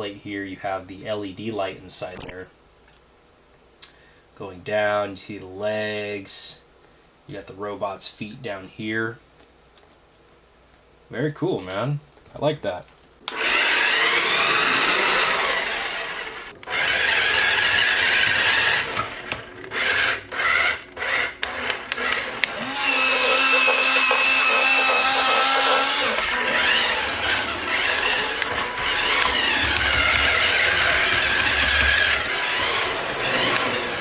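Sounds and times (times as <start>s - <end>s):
small electric motors whirring: 13.3s - 34.0s.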